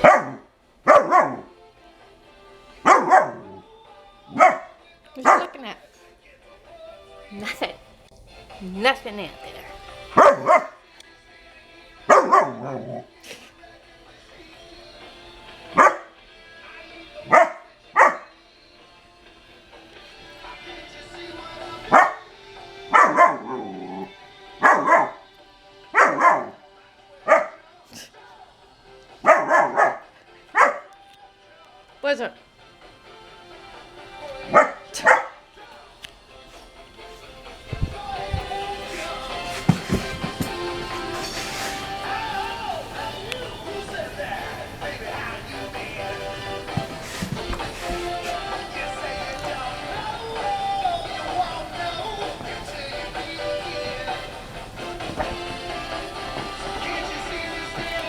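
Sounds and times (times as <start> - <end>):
dog barking deeply: 0.0 - 1.6, 2.8 - 3.6, 4.3 - 5.6, 10.1 - 10.8, 12.1 - 13.1, 15.7 - 16.1, 17.2 - 18.3, 21.8 - 22.3, 22.9 - 25.3, 25.9 - 26.6, 27.2 - 27.6, 29.2 - 30.9, 34.4 - 35.4.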